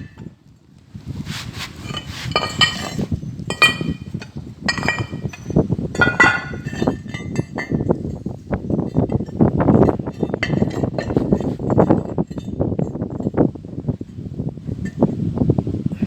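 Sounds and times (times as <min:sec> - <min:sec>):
steel parts clinking: 0:01.8 - 0:12.6
ringing metallic knocks: 0:04.7 - 0:08.2.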